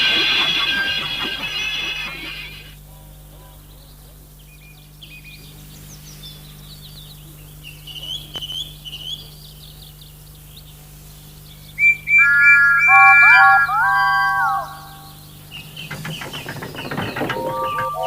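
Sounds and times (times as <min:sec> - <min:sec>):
gliding whistle tones: 0:00.0 - 0:02.7, 0:11.8 - 0:15.2, 0:17.2 - 0:18.0
small birds chirping: 0:03.3 - 0:18.0.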